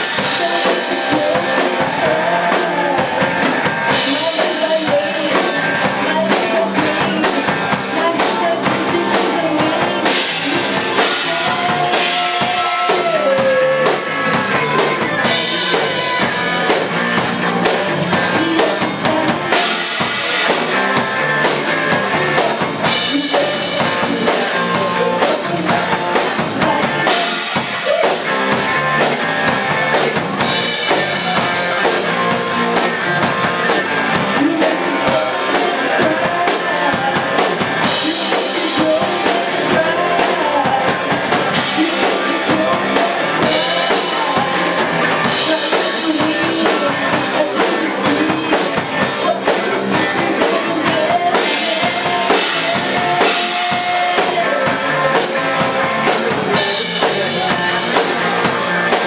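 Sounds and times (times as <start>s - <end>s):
drum kit beat: 0.0s - 59.0s
guitar: 0.0s - 59.0s
rock band playing: 0.0s - 59.0s.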